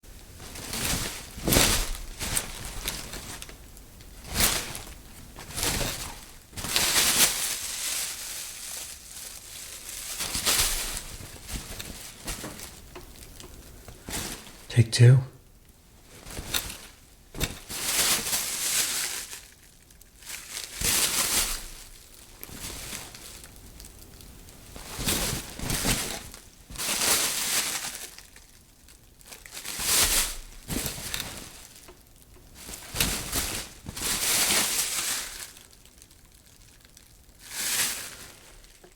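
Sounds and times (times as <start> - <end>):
plastic bag rustling: 0.1 - 14.7, 16.0 - 38.9.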